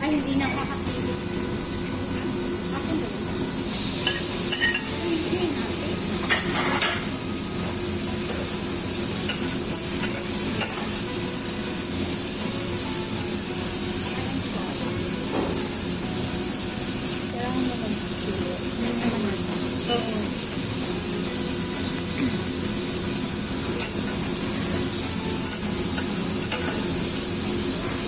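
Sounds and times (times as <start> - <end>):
food sizzling in a wok: 0.0 - 28.0
metal utensil clattering on pan: 4.0 - 5.0, 6.3 - 7.1, 25.4 - 26.9.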